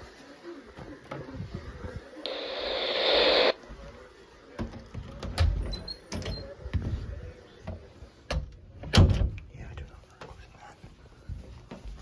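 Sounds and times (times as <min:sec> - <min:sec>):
radio static hiss: 0:02.1 - 0:03.6.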